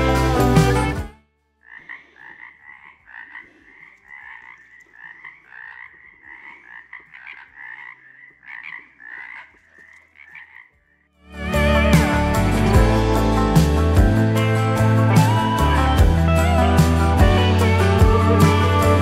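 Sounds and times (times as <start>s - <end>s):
frogs croaking: 1.5s - 11.2s.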